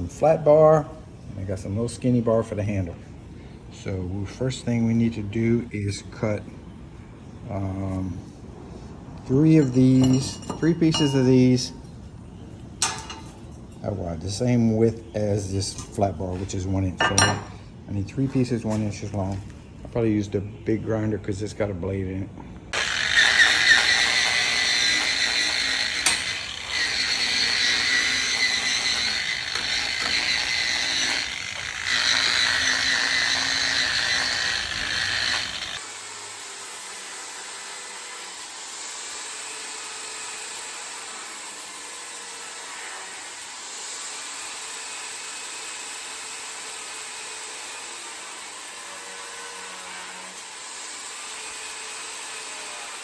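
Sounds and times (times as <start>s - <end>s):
angle grinder cutting metal: 22.8s - 53.0s.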